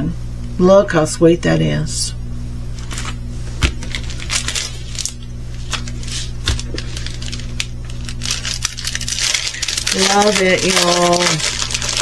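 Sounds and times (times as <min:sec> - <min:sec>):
low electrical hum: 0:00.0 - 0:12.0
plastic bags rustling: 0:02.8 - 0:12.0.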